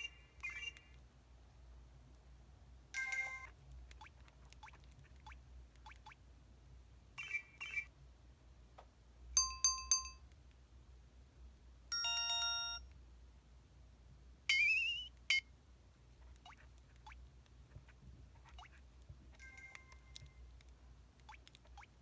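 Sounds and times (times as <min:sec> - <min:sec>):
phone notification tones: 0:09.4 - 0:10.2.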